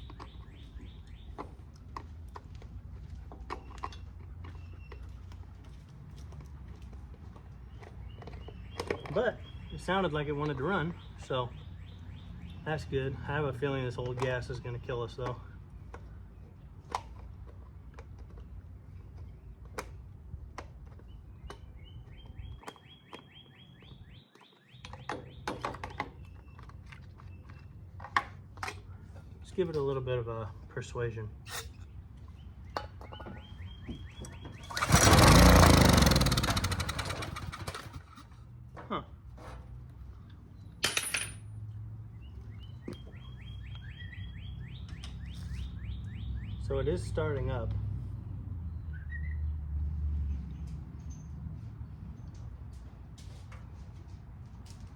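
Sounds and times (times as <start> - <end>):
bird chirping: 0.0 - 1.8, 3.5 - 5.4, 7.6 - 13.3, 20.8 - 28.1, 31.5 - 38.2, 42.1 - 47.3, 48.6 - 49.6
generator engine humming: 33.5 - 38.4.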